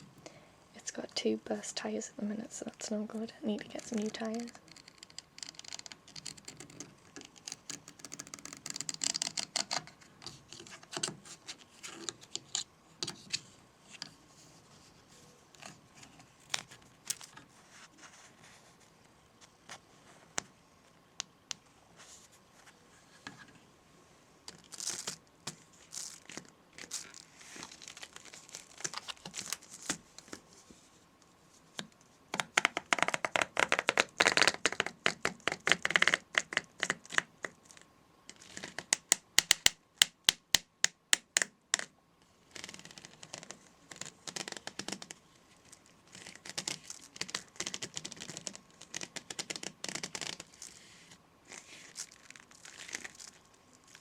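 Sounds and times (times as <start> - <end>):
crinkling and scratching: 2.6 - 20.5, 24.5 - 39.6, 41.8 - 54.0.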